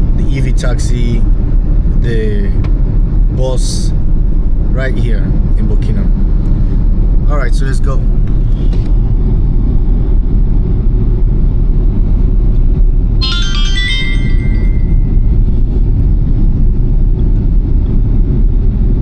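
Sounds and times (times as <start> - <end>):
vehicle ride low rumble: 0.0 - 19.0
electronic chime: 13.2 - 15.5.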